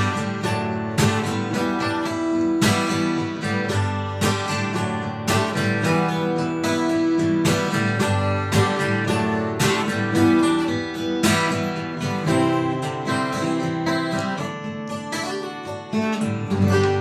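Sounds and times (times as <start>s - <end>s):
acoustic guitar strumming: 0.0s - 17.0s.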